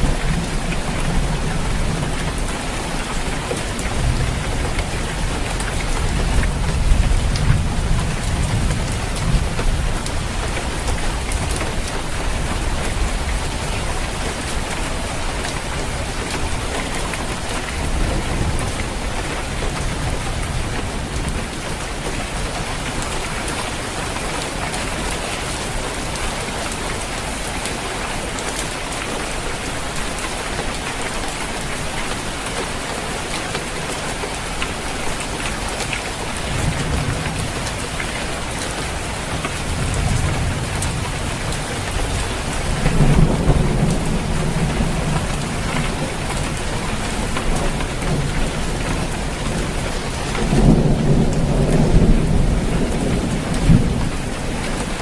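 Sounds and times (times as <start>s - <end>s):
rain falling on a roof: 0.0s - 55.0s
thunder rumbling: 39.0s - 55.0s.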